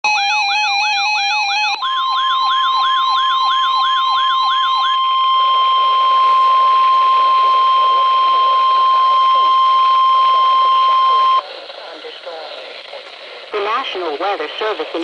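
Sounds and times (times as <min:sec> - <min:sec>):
falling siren sweep: 0:00.1 - 0:11.4
two-tone warble: 0:00.1 - 0:11.4
steady warning tone: 0:00.1 - 0:12.8
heavy radio static: 0:05.7 - 0:15.0.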